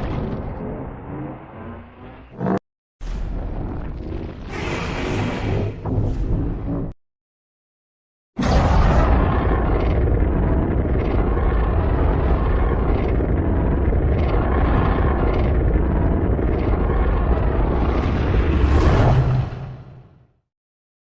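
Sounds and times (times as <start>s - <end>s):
monster breath blast with rumble: 4.4s - 6.3s.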